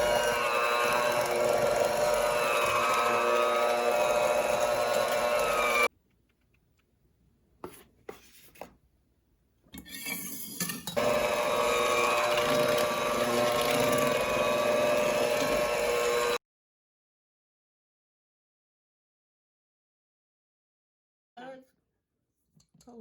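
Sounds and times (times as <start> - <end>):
electric mixer beating batter: 0.0 - 5.9, 11.0 - 16.4.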